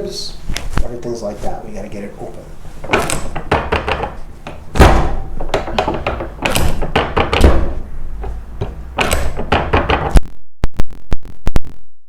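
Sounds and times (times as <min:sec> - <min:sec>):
dull thuds on treatment table: 0:02.8 - 0:10.2
joints cracking: 0:02.8 - 0:10.2.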